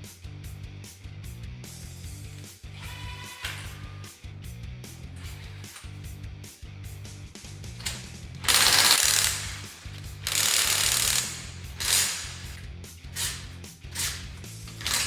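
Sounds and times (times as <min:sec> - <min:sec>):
impact driver hammering: 0:07.8 - 0:15.0.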